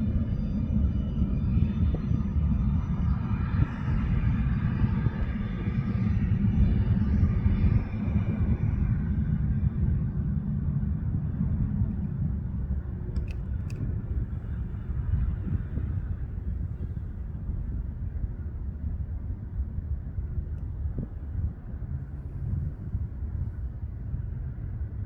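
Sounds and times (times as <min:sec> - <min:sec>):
jet engine: 0:00.0 - 0:25.0
low rumble: 0:00.0 - 0:25.0
sharp clicks: 0:13.1 - 0:13.9.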